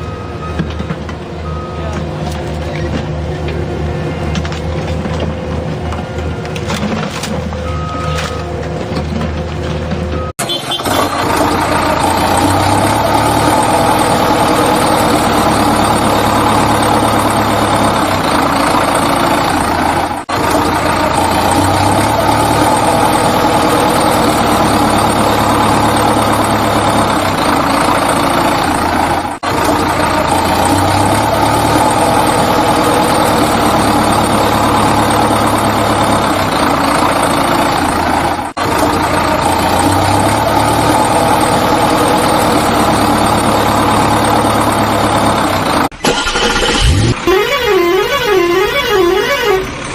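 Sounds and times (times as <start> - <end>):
heavy vehicle engine idling: 0.0 - 49.9.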